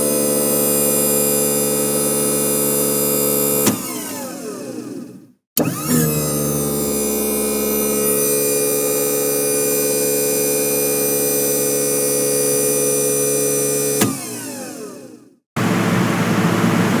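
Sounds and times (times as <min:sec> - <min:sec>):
machine clicking off and winding down: 0:03.5 - 0:09.9, 0:13.6 - 0:15.2.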